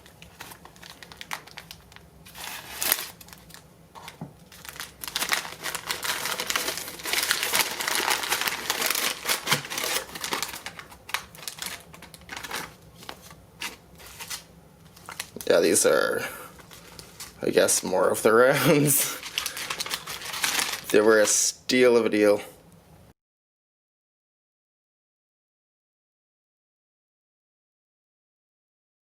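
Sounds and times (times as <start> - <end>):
packaging crinkling: 0.0 - 15.9, 16.5 - 17.4, 18.7 - 21.4.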